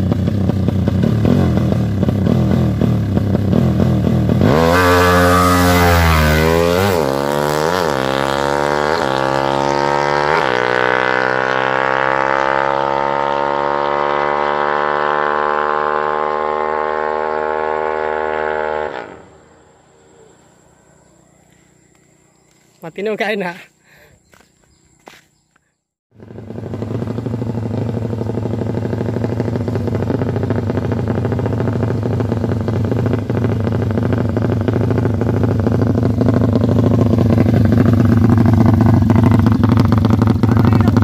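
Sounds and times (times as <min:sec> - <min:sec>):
motorcycle engine revving: 0:00.0 - 0:22.7, 0:26.1 - 0:41.0.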